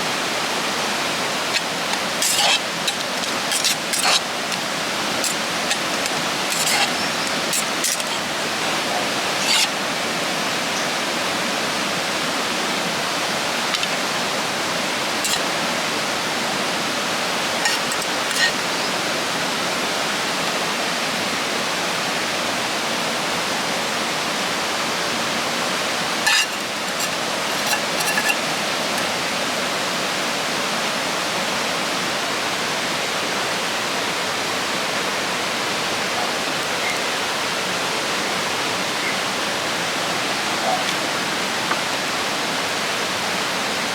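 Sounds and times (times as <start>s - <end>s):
river flowing: 0.0s - 43.9s.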